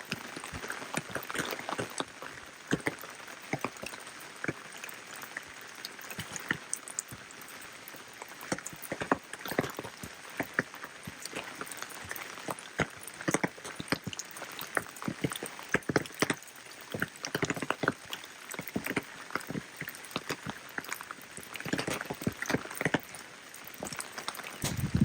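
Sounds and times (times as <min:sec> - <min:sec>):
rain falling: 0:23.4 - 0:25.0.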